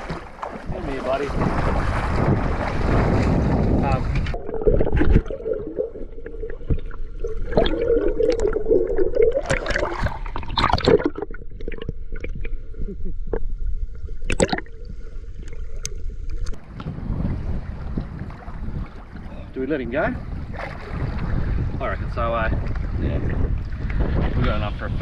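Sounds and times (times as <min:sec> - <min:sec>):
knocks and clicks on boat: 0:00.0 - 0:04.4
water sloshing: 0:00.0 - 0:21.5.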